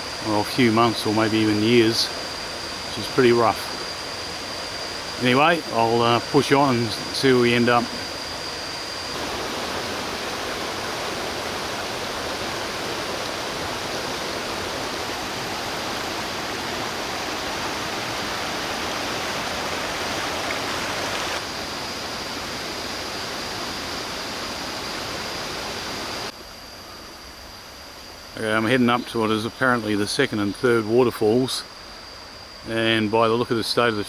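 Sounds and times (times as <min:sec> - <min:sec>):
thin high tone: 0:00.0 - 0:18.4
waterfall rushing: 0:00.0 - 0:21.4.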